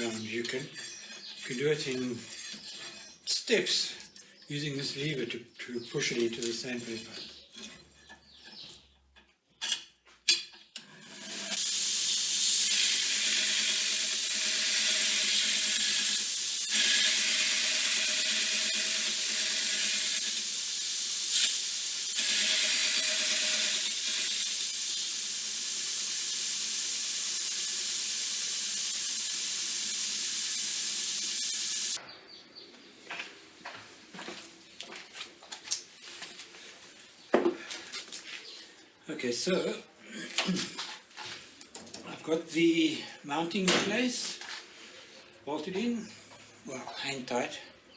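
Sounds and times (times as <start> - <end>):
sandpaper grinding metal: 0.0 - 3.2, 11.2 - 32.0.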